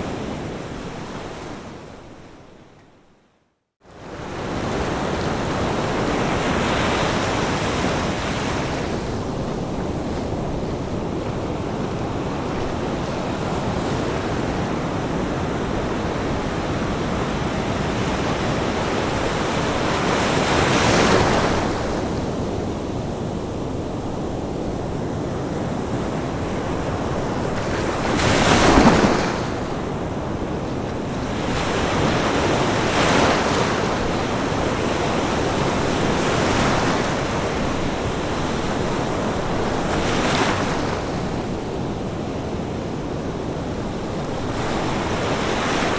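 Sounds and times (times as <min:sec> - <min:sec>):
ocean waves breaking: 0:04.0 - 0:22.4, 0:24.8 - 0:42.1.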